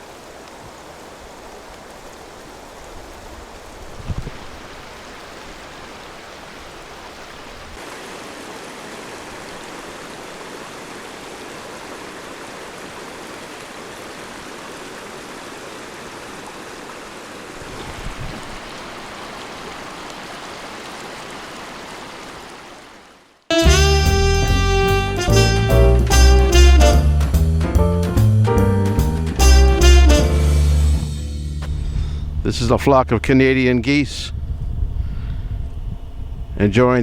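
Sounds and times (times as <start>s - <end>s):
stream rushing over rocks: 0.0s - 23.4s.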